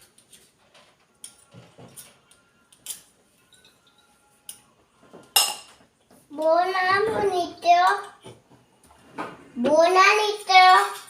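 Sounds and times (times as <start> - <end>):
utensils clinking against dishes: 1.2 - 5.9.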